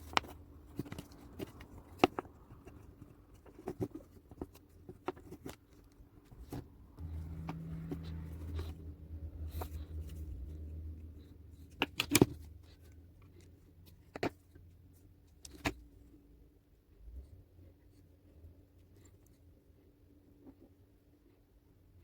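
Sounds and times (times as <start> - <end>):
low rumbling hum: 6.0 - 13.8.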